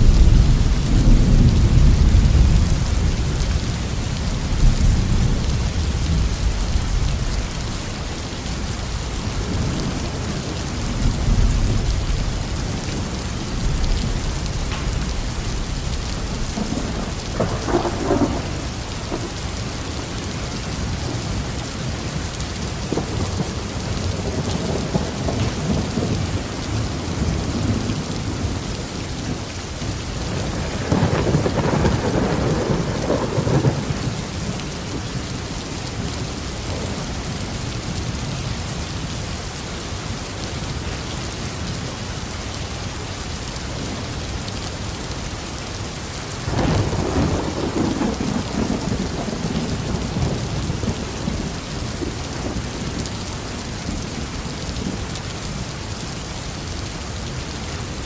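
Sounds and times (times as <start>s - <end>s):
rolling thunder: 0.0s - 21.4s, 22.2s - 35.2s, 46.4s - 55.1s
heavy rain on a roof: 0.0s - 58.0s.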